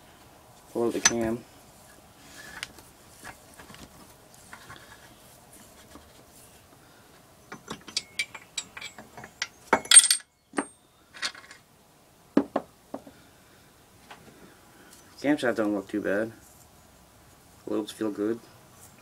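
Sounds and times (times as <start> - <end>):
faint handling noise: 0.5 - 6.8, 7.5 - 11.6
metal clicks and clinks: 7.5 - 11.6.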